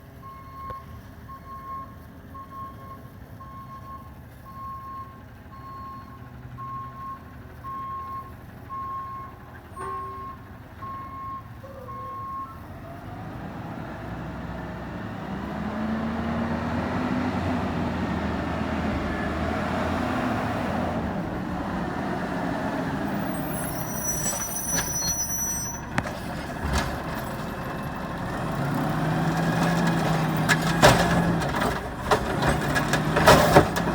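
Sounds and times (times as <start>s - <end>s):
truck reversing beeper: 0.2s - 13.4s, 22.4s - 33.9s
diesel engine revving: 12.2s - 33.9s.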